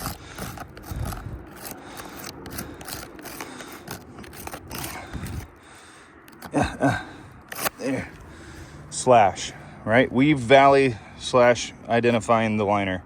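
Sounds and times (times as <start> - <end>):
shingles scraping and crackling: 0.0 - 6.6.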